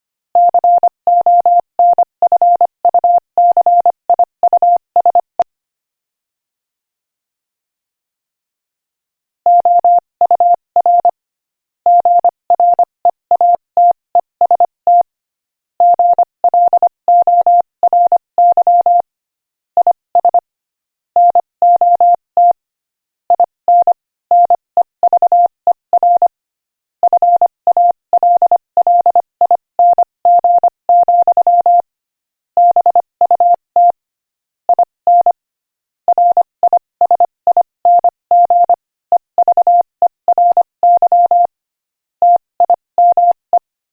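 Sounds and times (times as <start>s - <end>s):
morse code beeps: 0.4s - 5.2s, 9.5s - 11.2s, 11.9s - 15.1s, 15.8s - 19.0s, 21.2s - 22.6s, 23.3s - 26.3s, 27.0s - 31.9s, 32.6s - 34.0s, 34.7s - 35.4s, 36.1s - 41.5s, 42.2s - 43.7s.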